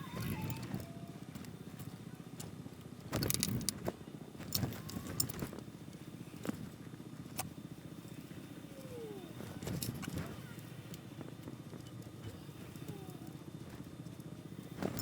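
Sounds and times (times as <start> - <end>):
clicks of parts and tools handled: 3.1 - 5.6.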